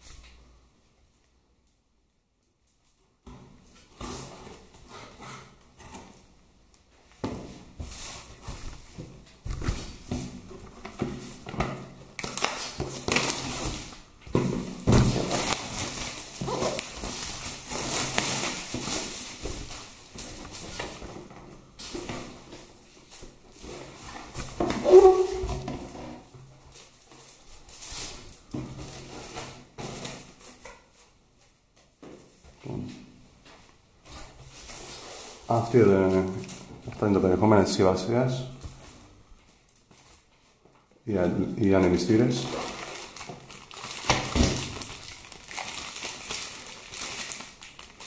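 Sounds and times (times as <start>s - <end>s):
packaging being opened and rustled: 8.0s - 21.2s, 41.3s - 48.0s
loud pitched squeak: 24.8s - 25.6s.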